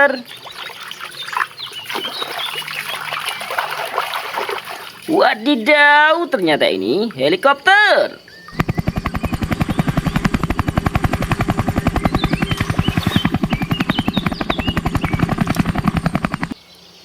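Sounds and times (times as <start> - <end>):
helicopter rotor blades chopping: 5.0 - 16.6
helicopter engine hum: 8.2 - 16.6.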